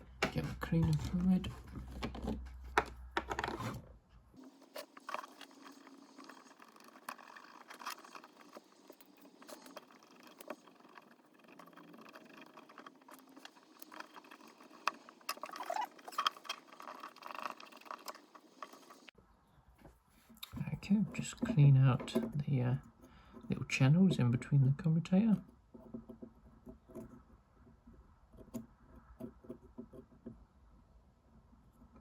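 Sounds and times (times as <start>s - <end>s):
scratching and small clicks: 4.4s - 19.2s, 20.4s - 30.4s.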